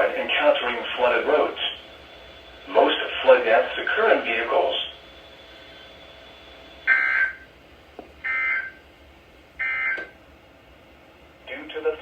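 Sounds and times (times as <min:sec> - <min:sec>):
radio hiss: 0:00.0 - 0:07.4.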